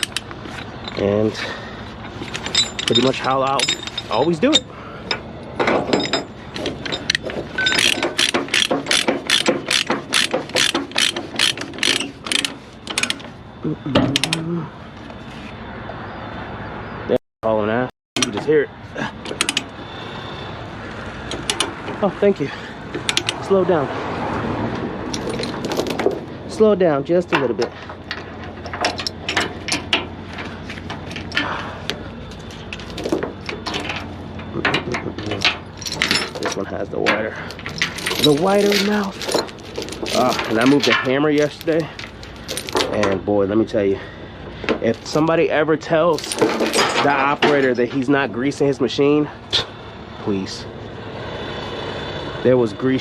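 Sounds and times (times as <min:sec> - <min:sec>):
metal chain and hooks clanking: 0:00.0 - 0:13.3, 0:25.1 - 0:31.6, 0:32.2 - 0:44.1, 0:44.7 - 0:48.6
low engine hum: 0:18.2 - 0:46.4, 0:47.0 - 0:53.0.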